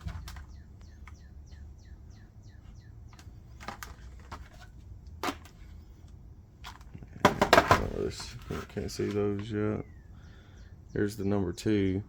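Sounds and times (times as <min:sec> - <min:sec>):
bird chirping: 0:00.0 - 0:03.6, 0:09.2 - 0:12.0.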